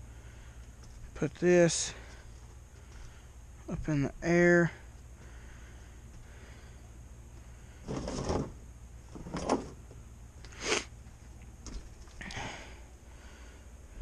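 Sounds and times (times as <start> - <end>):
tools scraping and clunking: 7.8 - 9.9.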